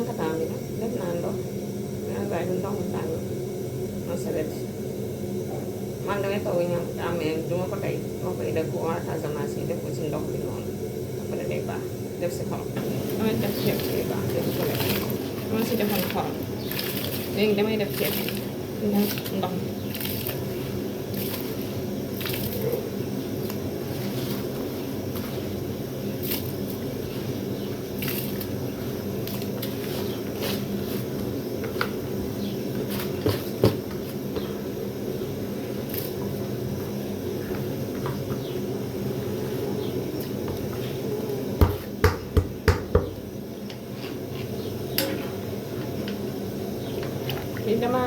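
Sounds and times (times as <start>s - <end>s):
water pouring into pot: 15.8s - 22.6s.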